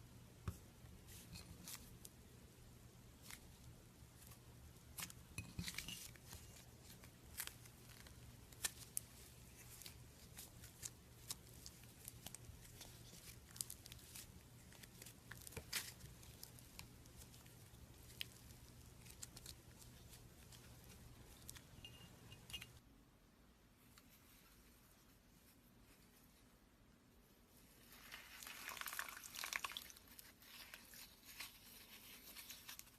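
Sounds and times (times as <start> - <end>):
low steady hum: 0.0 - 28.3
crisp crackles and clicks: 3.2 - 22.8, 27.7 - 32.9.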